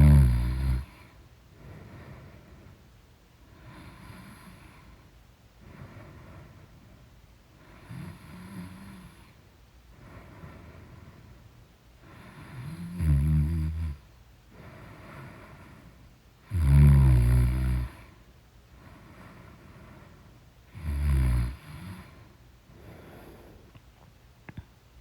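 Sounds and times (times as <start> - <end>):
person snoring loudly: 0.0 - 1.0, 12.5 - 14.0, 16.5 - 18.0, 20.8 - 22.0
soft breathing: 0.8 - 12.7, 14.5 - 16.2, 17.8 - 20.8, 21.5 - 24.8.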